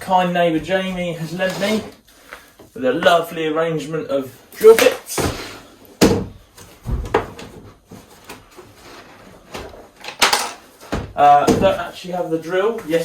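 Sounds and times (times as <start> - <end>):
tools knocking and clattering: 9.5 - 11.8.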